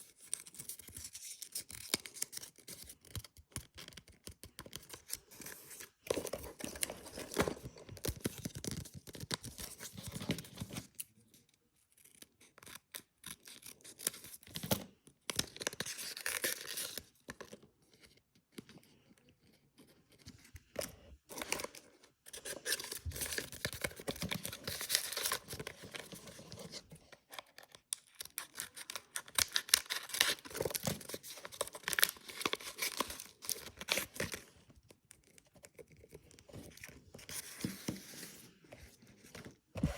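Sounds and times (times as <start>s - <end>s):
paper scraping crinkling and tearing: 28.2s - 34.5s.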